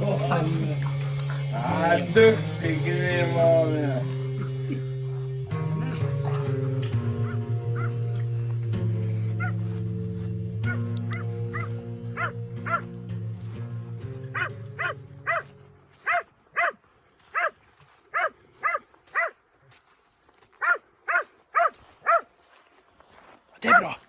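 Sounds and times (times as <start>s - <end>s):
background music chords: 0.0s - 16.7s
dog barking: 6.3s - 8.0s, 9.4s - 9.6s, 10.6s - 12.9s, 14.4s - 19.4s, 20.6s - 22.3s, 23.6s - 24.0s.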